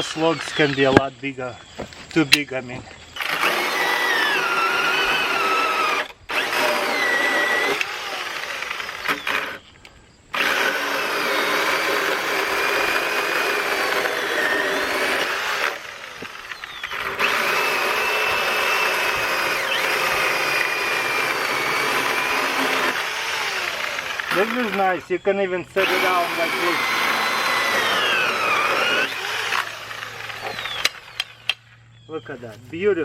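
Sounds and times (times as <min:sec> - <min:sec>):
electric chainsaw cutting log: 0:00.0 - 0:01.0, 0:03.2 - 0:09.6, 0:10.3 - 0:31.6.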